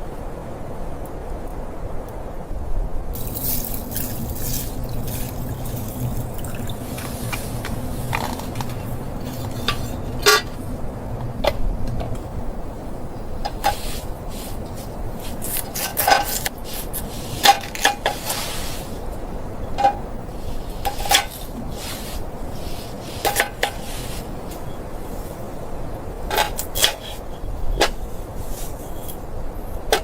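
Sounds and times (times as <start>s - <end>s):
low rushing noise: 0.0s - 30.0s
metal cookware clinking: 3.2s - 10.8s, 15.4s - 18.5s, 19.8s - 20.1s, 20.8s - 21.8s, 23.2s - 23.9s, 26.3s - 27.9s.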